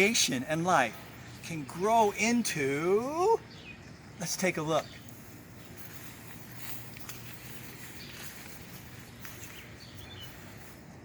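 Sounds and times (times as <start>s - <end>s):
steady low hiss: 0.0s - 11.0s.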